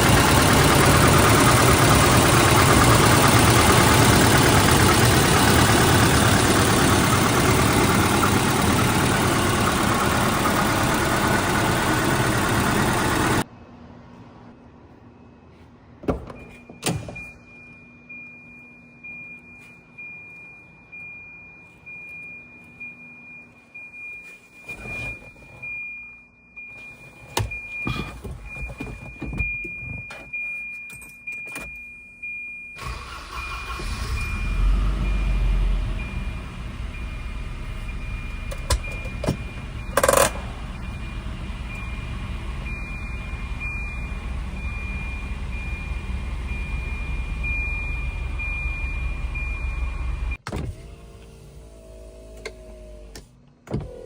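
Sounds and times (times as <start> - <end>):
car engine cranking and idling: 0.0 - 13.5, 32.8 - 54.0.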